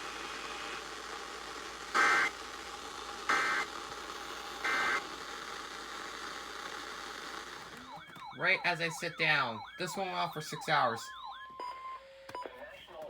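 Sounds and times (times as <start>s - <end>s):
two-tone warbling data bursts: 8.3s - 12.0s.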